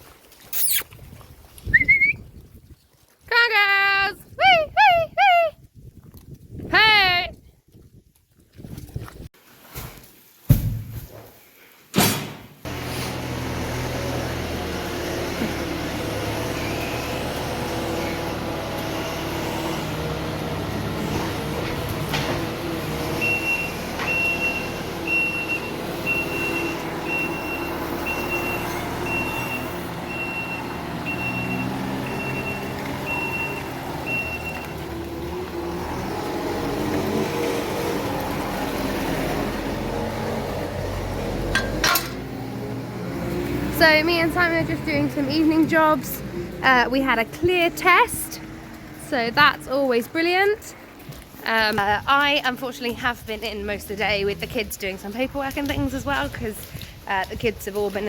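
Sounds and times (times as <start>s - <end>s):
farm vehicle engine running: 12.7s - 58.0s
reversing alarm beeping: 23.2s - 34.8s.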